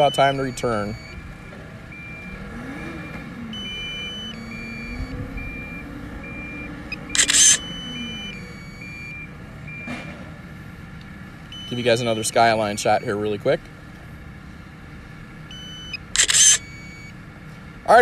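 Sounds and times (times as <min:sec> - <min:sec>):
short electronic beeps: 0:00.0 - 0:01.3, 0:01.9 - 0:10.2, 0:11.5 - 0:11.9, 0:15.5 - 0:17.2
work vehicle engine: 0:00.0 - 0:18.0
camera shutter: 0:07.1 - 0:07.7, 0:16.2 - 0:16.7.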